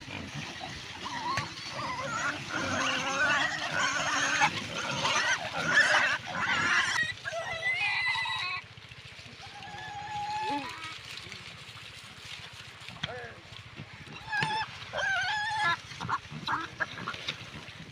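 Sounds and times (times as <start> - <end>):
piglets squealing: 0.4 - 8.6, 9.5 - 10.9, 14.1 - 17.1.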